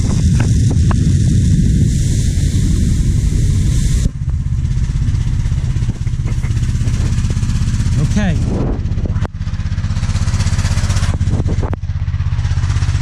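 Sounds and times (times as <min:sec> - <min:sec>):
water jet hiss: 0:00.0 - 0:08.0
pressure washer machine pulsing: 0:00.0 - 0:13.0.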